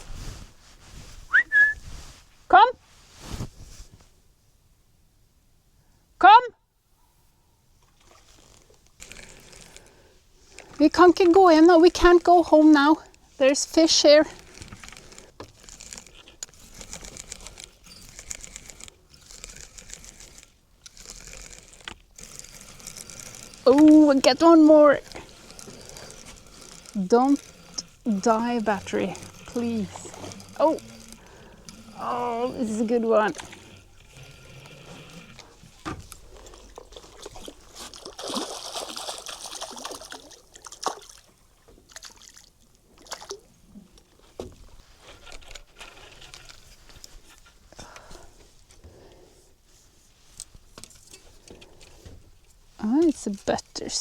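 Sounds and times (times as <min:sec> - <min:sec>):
fishing reel clicking: 0:08.4 - 0:09.9, 0:13.8 - 0:37.6
water splashing and trickling: 0:35.3 - 0:43.6.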